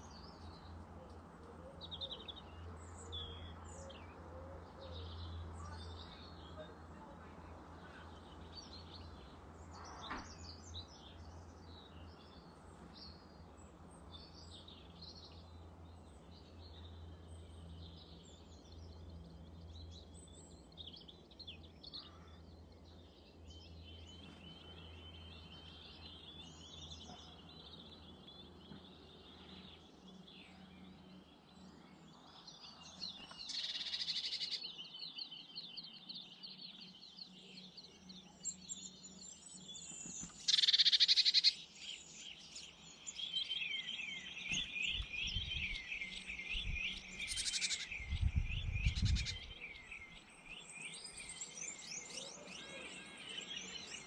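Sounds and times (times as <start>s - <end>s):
small birds twittering: 0.0s - 54.0s.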